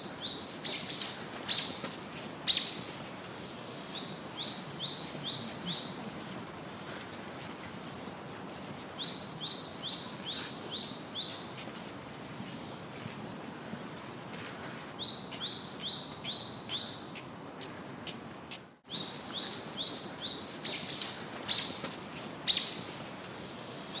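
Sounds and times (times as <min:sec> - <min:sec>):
steady background hiss: 0:00.0 - 0:24.0.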